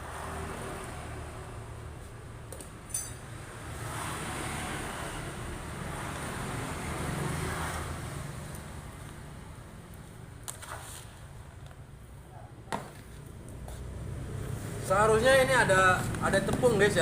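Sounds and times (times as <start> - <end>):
sharp metallic clink: 2.9 - 3.3.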